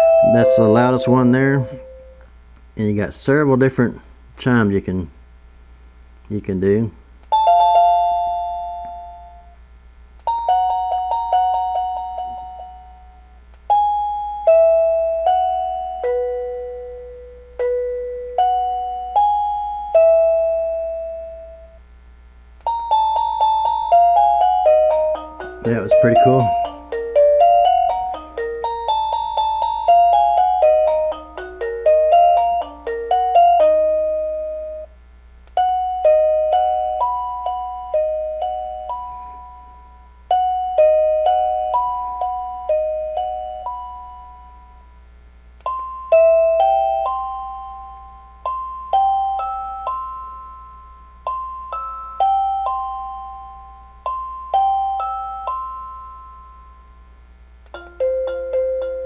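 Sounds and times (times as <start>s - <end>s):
electronic doorbell chime melodies: 0.0s - 2.2s, 7.3s - 9.6s, 10.3s - 21.8s, 22.6s - 34.9s, 35.6s - 45.0s, 45.6s - 59.0s.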